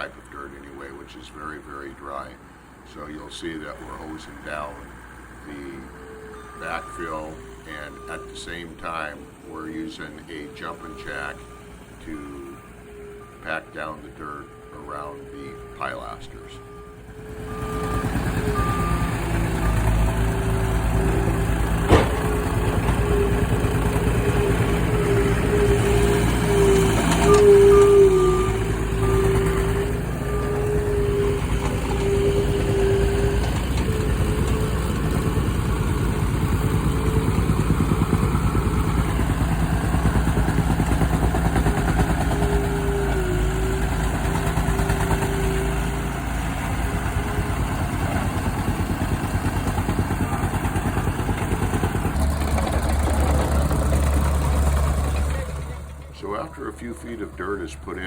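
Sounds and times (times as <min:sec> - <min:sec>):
reversing alarm beeping: 0:00.0 - 0:49.0, 0:49.7 - 0:53.3
diesel engine and hydraulics whining: 0:00.0 - 0:58.0
sharp knock: 0:21.9 - 0:22.5.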